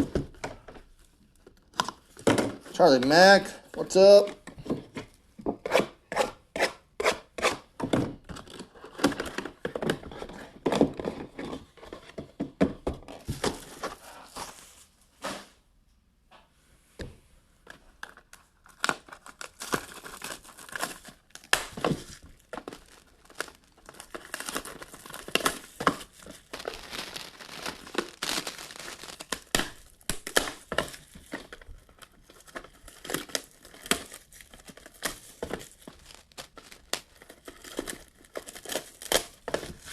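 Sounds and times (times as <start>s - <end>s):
plastic wrap tearing and crumpling: 18.2s - 39.9s.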